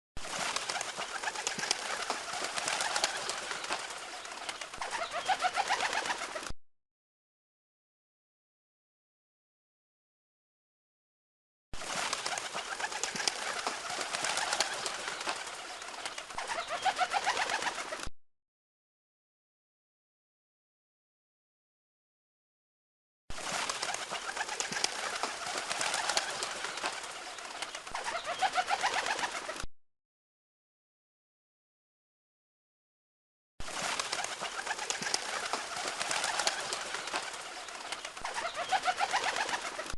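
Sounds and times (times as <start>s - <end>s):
pigeon wing flaps: 0.2s - 6.6s, 11.8s - 18.1s, 23.3s - 29.7s, 33.6s - 39.9s
pigeon calls: 0.3s - 6.5s, 12.2s - 18.0s, 23.5s - 29.7s, 33.7s - 39.9s.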